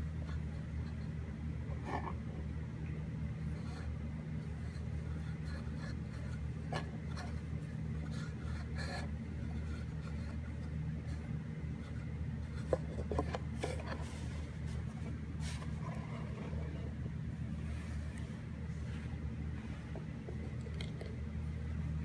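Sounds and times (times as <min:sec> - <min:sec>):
steady low hum: 0:00.0 - 0:22.0
rubbing and rustling handling: 0:03.4 - 0:22.0.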